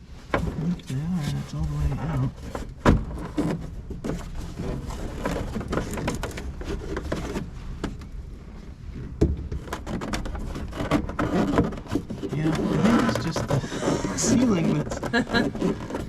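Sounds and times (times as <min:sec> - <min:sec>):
plastic clicks rattles and scrapes: 0:02.3 - 0:08.0, 0:09.5 - 0:16.0.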